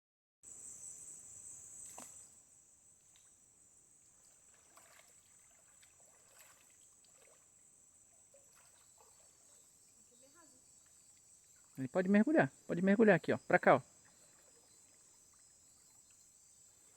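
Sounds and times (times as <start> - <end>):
soft water splashes: 1.8 - 16.9
high-pitched insect drone: 6.5 - 16.9.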